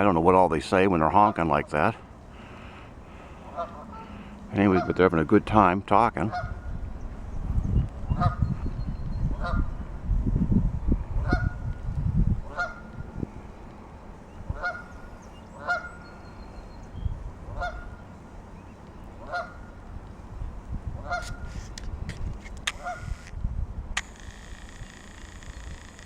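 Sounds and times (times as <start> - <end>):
geese honking: 1.1 - 6.8, 8.1 - 8.6, 9.3 - 9.8, 11.2 - 11.6, 12.4 - 20.2, 21.0 - 21.8, 22.6 - 23.3
sharp clicks: 21.2 - 26.0.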